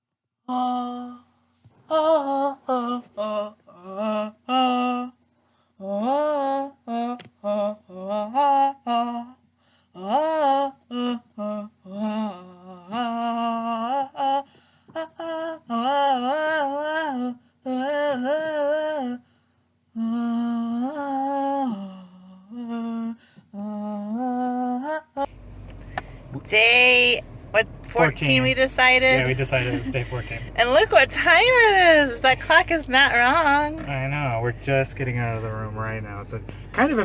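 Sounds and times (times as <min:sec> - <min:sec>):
person humming: 0:28.0 - 0:32.7.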